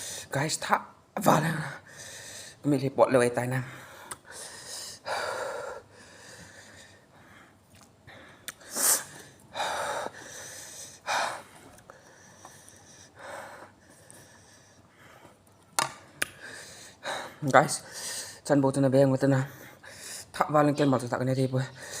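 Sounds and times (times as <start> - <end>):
person breathing sharply: 0.0 - 0.3, 1.8 - 2.6, 3.7 - 15.4, 16.3 - 18.4.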